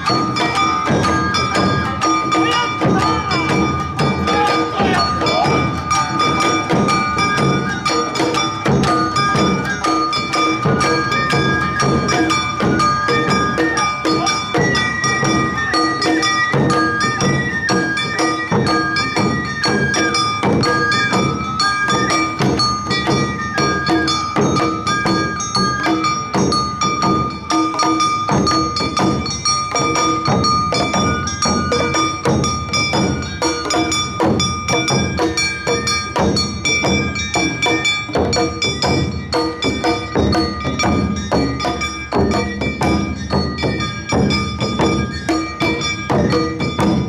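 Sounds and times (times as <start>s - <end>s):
bamboo flutes playing melody: 0.0s - 26.3s
drums beating: 0.0s - 47.0s.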